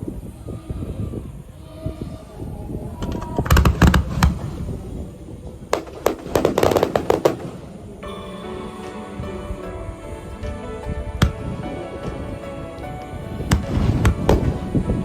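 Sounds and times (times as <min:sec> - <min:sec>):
fireworks bursting: 0:03.0 - 0:08.1, 0:11.2 - 0:15.0
music: 0:08.0 - 0:15.0.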